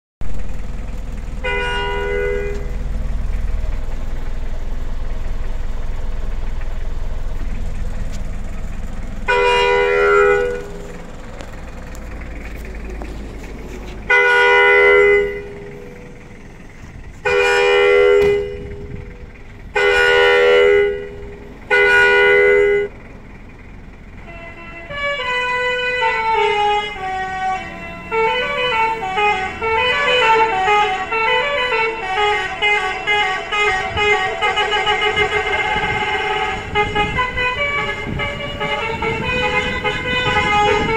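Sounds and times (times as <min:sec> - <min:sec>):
low rumble: 0:00.2 - 0:25.9, 0:33.7 - 0:40.9
electric musical horn blasts: 0:01.4 - 0:02.9, 0:09.2 - 0:11.0, 0:14.0 - 0:16.2, 0:17.2 - 0:22.9, 0:24.2 - 0:40.9.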